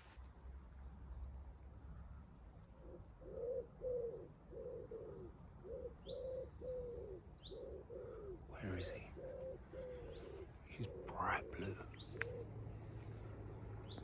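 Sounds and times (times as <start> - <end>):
wood pigeon cooing: 2.8 - 12.6.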